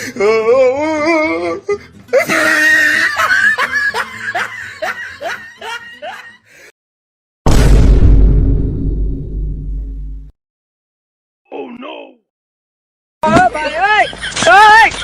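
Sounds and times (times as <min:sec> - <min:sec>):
loud boom-like hit: 0:07.5 - 0:10.3.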